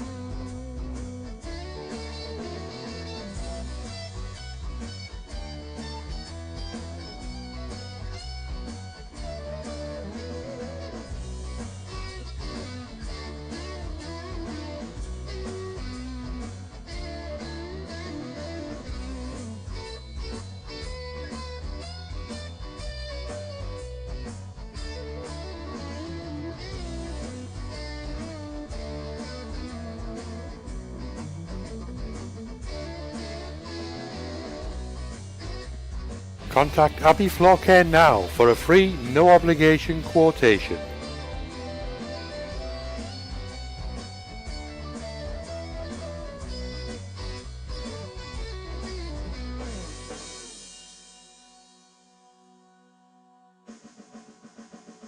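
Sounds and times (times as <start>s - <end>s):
bending guitar melody: 0.0s - 50.3s
guitar-led background music: 0.0s - 55.0s
steady bass beat: 36.4s - 41.5s.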